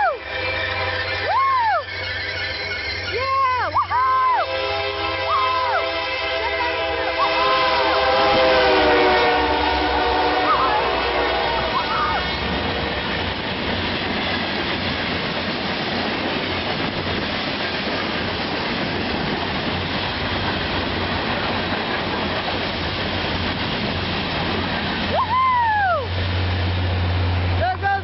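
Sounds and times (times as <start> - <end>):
rising-and-falling whoop: 0.0 - 0.2, 1.2 - 1.9, 25.1 - 26.2
train wheels rumbling on rails: 0.0 - 28.0
clickety-clack over rail joints: 12.0 - 25.1.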